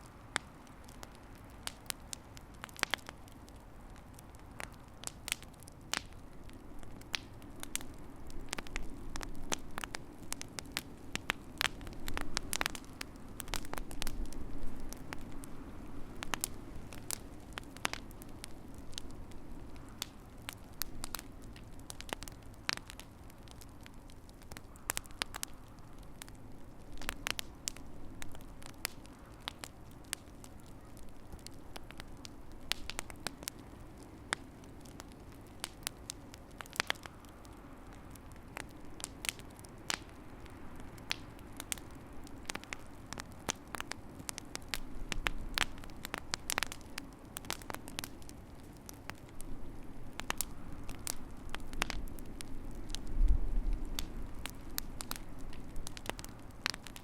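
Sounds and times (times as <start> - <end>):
low rumble of flames: 0.0 - 57.0
wood fire crackling: 0.0 - 57.0
sharp pops and snaps: 19.7 - 33.6, 50.1 - 57.0.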